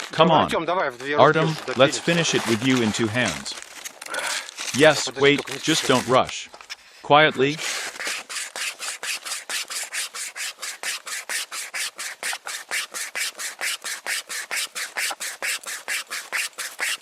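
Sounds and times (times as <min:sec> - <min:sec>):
string saw rasping through wood: 0:05.4 - 0:06.2, 0:07.4 - 0:17.0.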